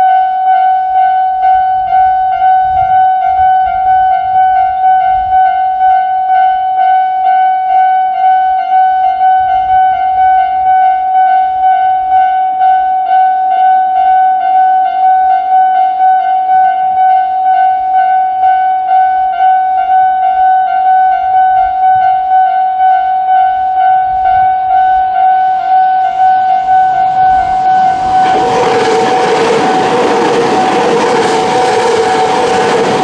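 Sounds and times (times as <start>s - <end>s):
level-crossing electronic alarm: 0.0s - 33.0s
approaching train rushing: 26.1s - 33.0s.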